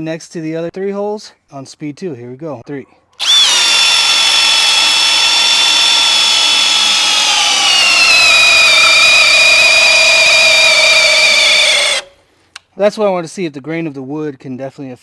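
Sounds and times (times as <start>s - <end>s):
hammer drill whining: 3.2s - 12.2s.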